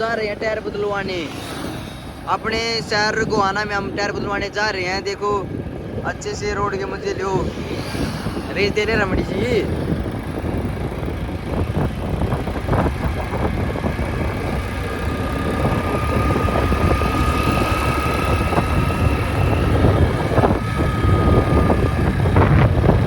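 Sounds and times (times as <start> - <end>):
road and wind noise: 0.0 - 23.0
motorcycle engine running: 7.0 - 23.0.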